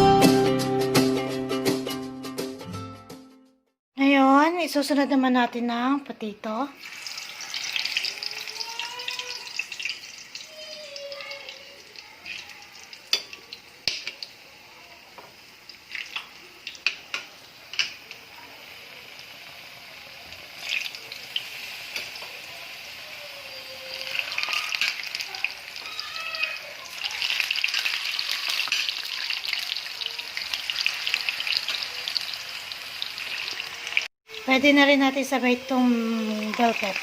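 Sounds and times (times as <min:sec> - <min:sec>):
potatoes frying in oil: 0:06.8 - 0:37.0
sharp clicks against pan: 0:13.1 - 0:14.3.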